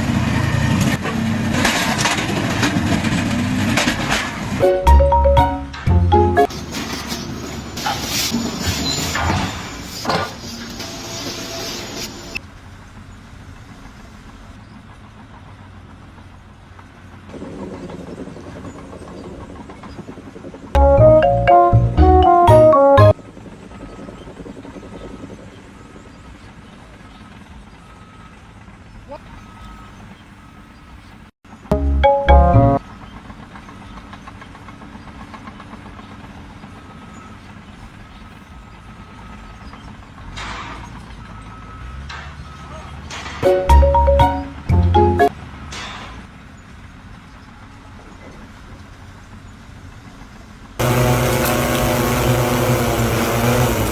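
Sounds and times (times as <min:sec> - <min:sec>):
engine humming: 0:20.8 - 0:23.2, 0:31.7 - 0:32.8, 0:43.4 - 0:45.4, 0:50.8 - 0:53.9.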